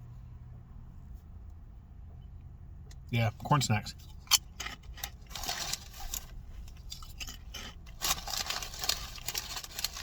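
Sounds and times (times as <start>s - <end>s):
corn snacks crunching: 4.5s - 10.0s.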